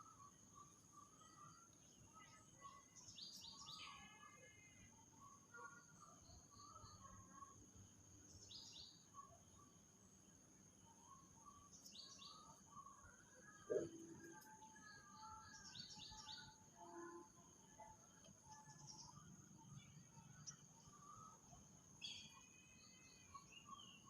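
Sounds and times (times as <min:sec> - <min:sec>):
soft low bird chirps: 0:10.9 - 0:21.4
steady high-pitched tone: 0:13.7 - 0:14.4.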